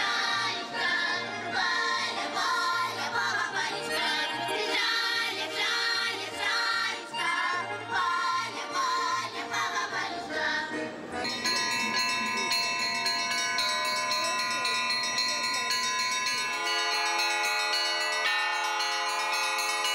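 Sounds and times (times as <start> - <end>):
bells ringing: 11.2 - 19.9.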